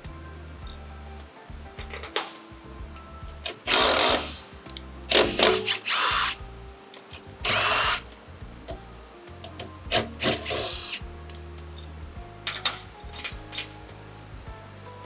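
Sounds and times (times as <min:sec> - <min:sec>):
power drill whining: 0:03.7 - 0:04.4, 0:05.1 - 0:06.4, 0:07.5 - 0:08.0.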